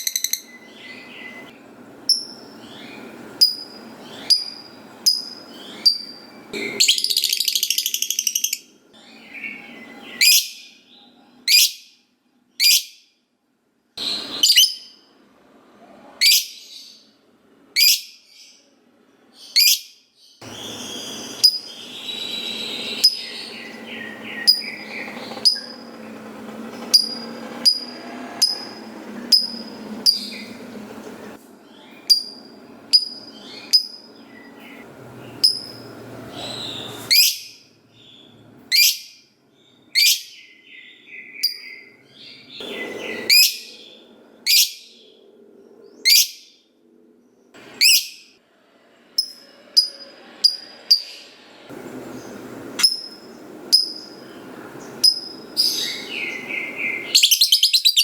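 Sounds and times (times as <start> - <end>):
bird shrill chirps: 2.1 - 11.9, 14.0 - 15.0, 19.5 - 25.9, 47.8 - 48.3, 55.0 - 58.0
soft bird chattering: 54.9 - 58.0.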